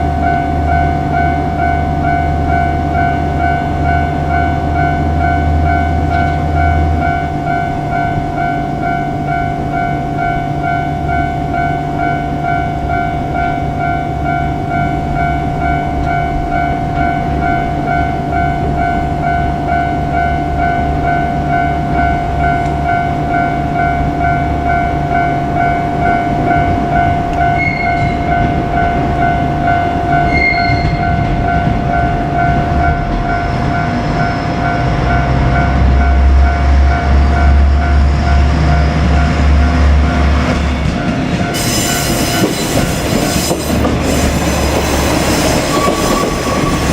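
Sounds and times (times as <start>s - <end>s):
diesel railcar engine: 0.0s - 46.9s
loud burst of train noise: 25.9s - 46.9s
brief high tones: 27.5s - 28.3s, 30.2s - 31.3s.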